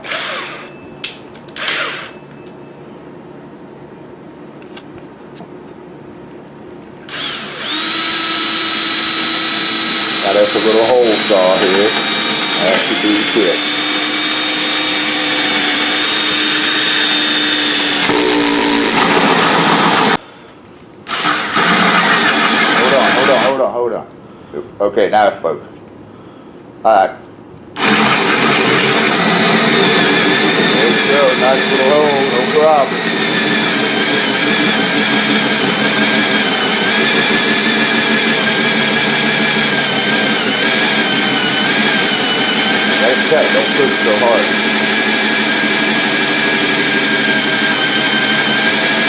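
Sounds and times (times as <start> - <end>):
power drill hole saw cutting wood: 0.0 - 0.8, 1.6 - 2.2, 7.1 - 20.2, 21.1 - 23.6, 27.8 - 49.0.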